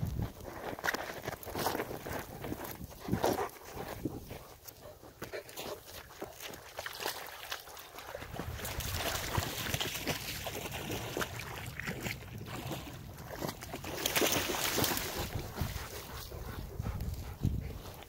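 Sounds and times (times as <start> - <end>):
wind buffeting microphone: 15.0 - 18.0.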